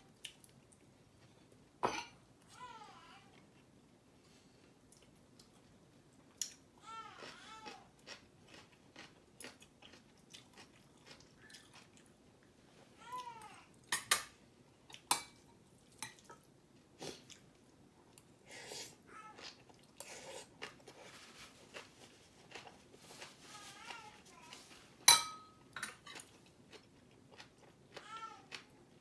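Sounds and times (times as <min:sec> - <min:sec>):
chewing: 0:07.2 - 0:12.2, 0:19.4 - 0:24.8, 0:26.0 - 0:28.8.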